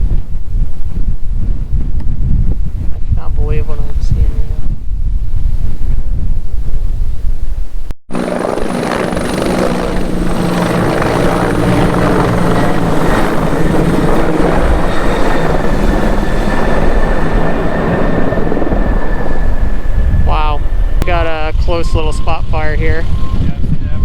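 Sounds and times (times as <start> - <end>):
helicopter rotor and turbine: 0.0 - 24.0
wind buffeting microphone: 0.0 - 24.0
thin high whine: 8.2 - 24.0.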